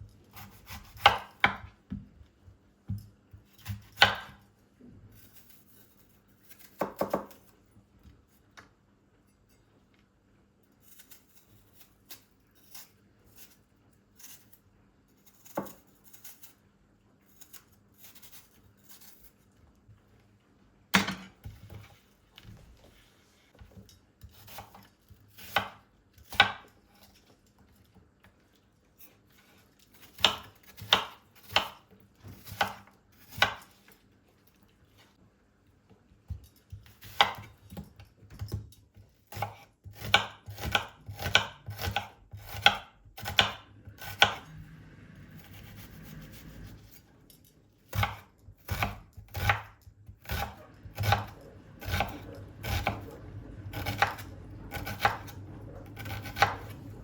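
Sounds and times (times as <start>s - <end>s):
knife chopping on cutting board: 0.3s - 2.1s, 2.9s - 4.4s, 6.6s - 7.5s, 24.2s - 26.7s, 30.0s - 33.7s, 36.8s - 37.5s, 39.3s - 44.5s, 47.9s - 56.8s.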